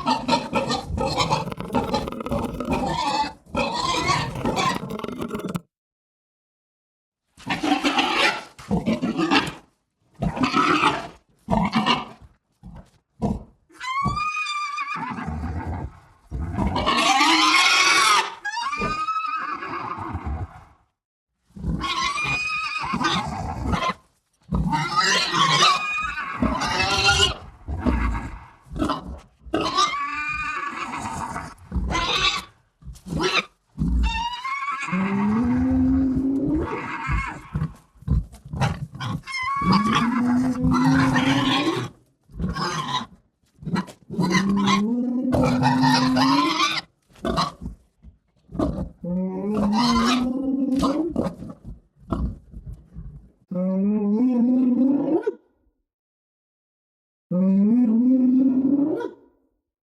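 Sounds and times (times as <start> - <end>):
creature grunts: 1.2 - 2.9, 4.1 - 5.7.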